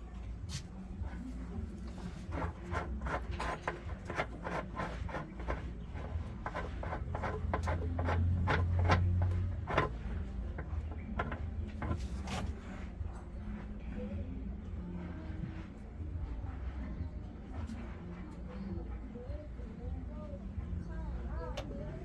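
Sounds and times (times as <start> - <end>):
tools clicking and scraping: 2.0 - 12.5.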